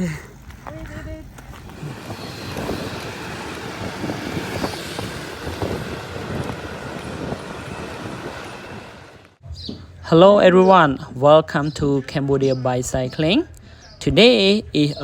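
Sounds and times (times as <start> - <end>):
road and wind rumble: 0.0 - 10.9.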